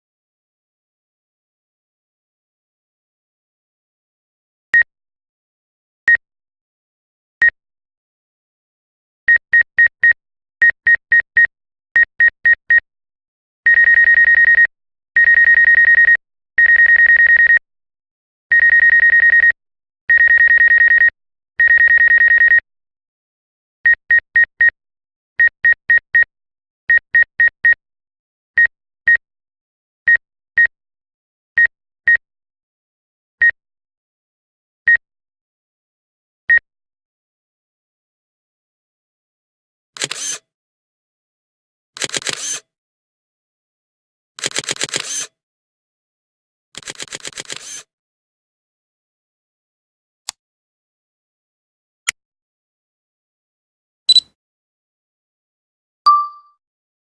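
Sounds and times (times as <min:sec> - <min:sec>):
high-pitched electronic beeps: 0:56.1 - 0:56.4.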